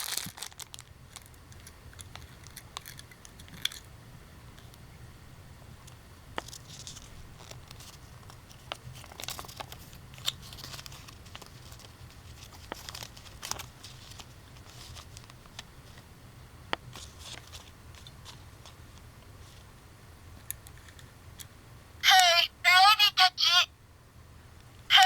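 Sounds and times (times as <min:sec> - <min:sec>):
plastic packaging crinkling: 0:00.0 - 0:03.8, 0:06.4 - 0:16.0
steady low hum: 0:00.6 - 0:22.7, 0:23.7 - 0:25.0.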